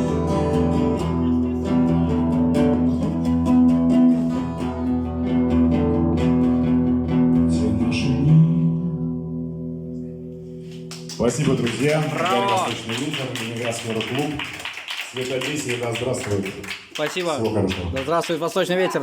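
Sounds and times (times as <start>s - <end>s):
guitar strumming chords: 0.0s - 11.1s.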